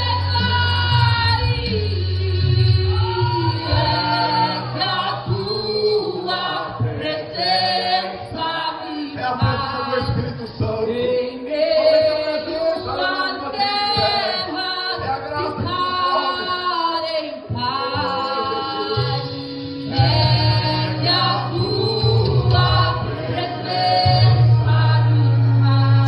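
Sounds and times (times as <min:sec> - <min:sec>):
instrumental accompaniment: 0:00.0 - 0:26.0
people singing: 0:00.0 - 0:26.0
deep bass line: 0:19.0 - 0:26.0.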